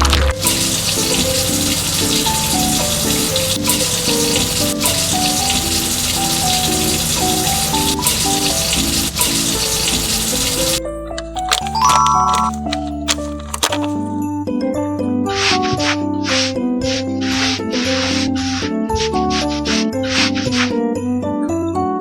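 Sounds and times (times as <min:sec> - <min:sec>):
background music melody: 0:00.0 - 0:22.0
running water from tap: 0:00.3 - 0:10.8.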